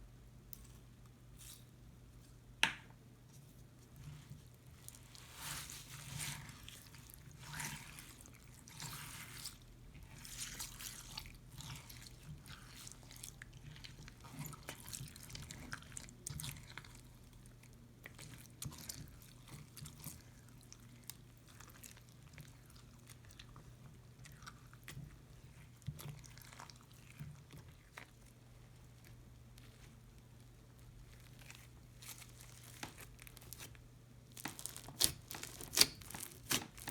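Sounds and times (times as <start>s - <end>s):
crunchy slime squished by hand: 4.2s - 17.2s, 24.2s - 36.9s.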